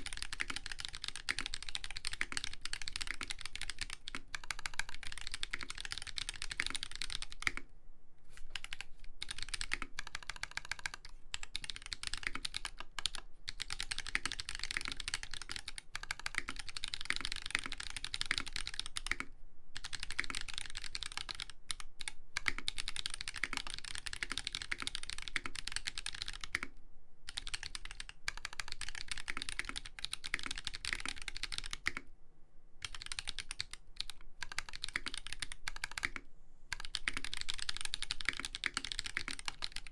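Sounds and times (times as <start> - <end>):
fast mechanical keyboard typing: 0.0 - 7.7, 8.5 - 26.7, 27.3 - 32.1, 32.8 - 39.9.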